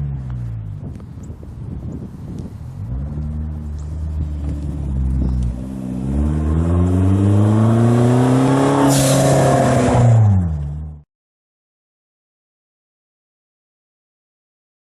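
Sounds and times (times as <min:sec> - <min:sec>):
car engine revving: 0:02.7 - 0:11.0.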